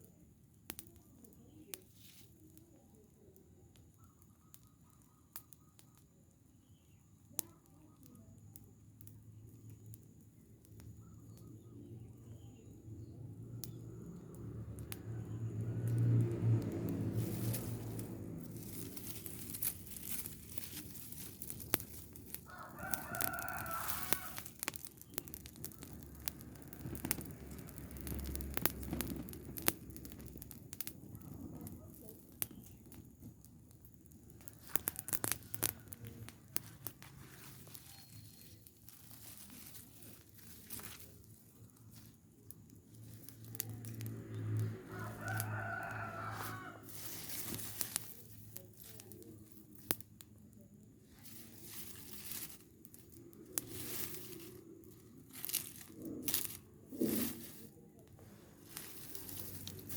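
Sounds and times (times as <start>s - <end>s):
crackles and clicks: 0.0s - 59.9s
rooster crowing: 22.4s - 24.5s, 44.6s - 47.8s.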